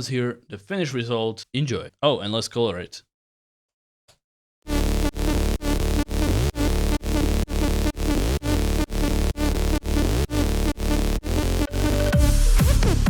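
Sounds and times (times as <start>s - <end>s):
electronic dance music: 4.7s - 13.0s.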